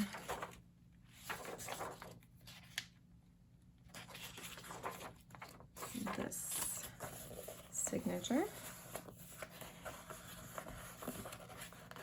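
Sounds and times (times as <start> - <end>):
book pages rustling: 0.0 - 3.0, 3.9 - 12.0.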